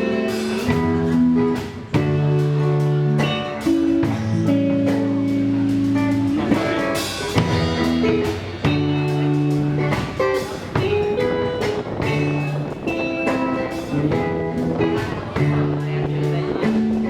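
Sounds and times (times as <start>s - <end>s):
drums: 0.0s - 17.0s
rock band playing: 0.0s - 17.0s
sustained guitar chords: 0.0s - 17.0s.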